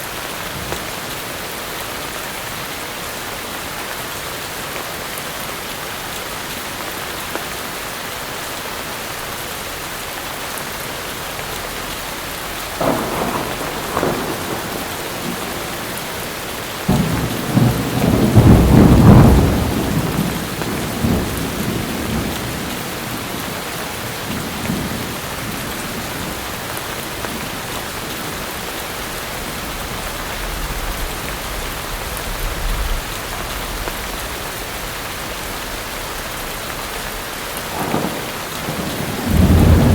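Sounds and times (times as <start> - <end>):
heavy rain pouring: 0.0 - 39.9
thunder rumbling: 12.7 - 28.6, 29.2 - 39.9.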